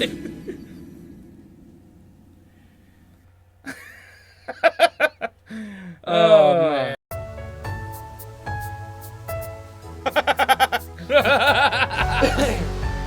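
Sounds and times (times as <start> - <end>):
person laughing: 3.6 - 5.3, 10.0 - 12.8.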